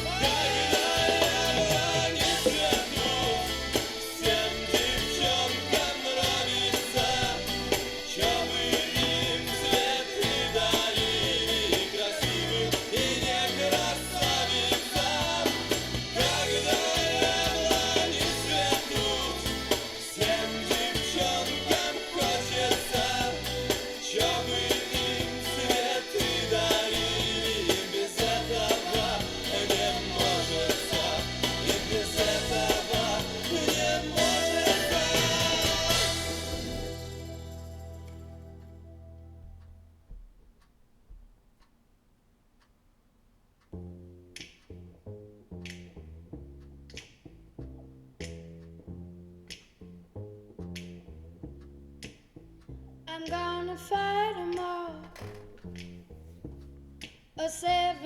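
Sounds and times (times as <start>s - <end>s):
song over loudspeakers: 0.0s - 38.7s.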